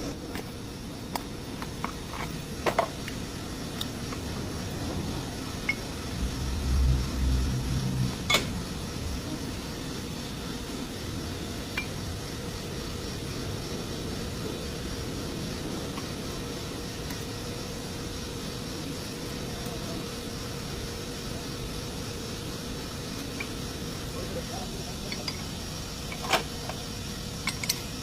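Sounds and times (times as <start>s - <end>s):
low hum: 3.1s - 23.8s.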